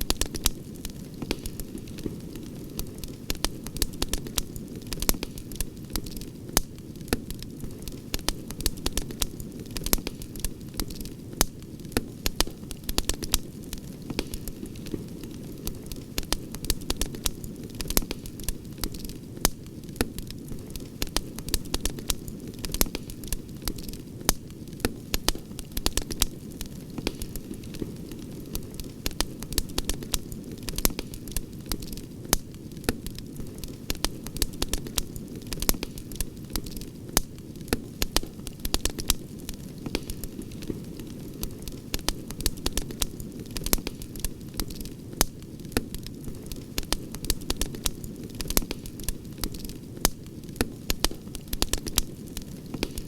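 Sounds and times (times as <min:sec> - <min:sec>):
campfire crackling and popping: 0:00.0 - 0:53.0.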